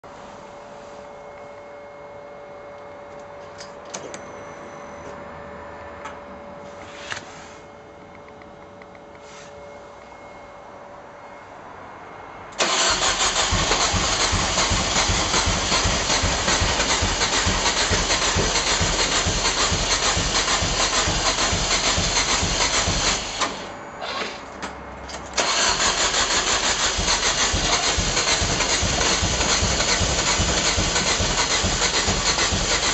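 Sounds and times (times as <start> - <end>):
engine cranking on starter motor: 12.6 - 24.5, 25.2 - 32.9.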